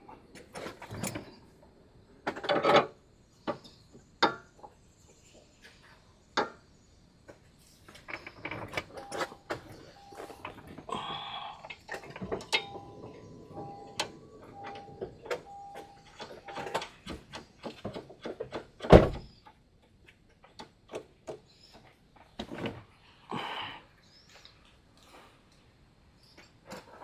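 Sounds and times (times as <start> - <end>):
faint short tone: 9.0 - 10.5.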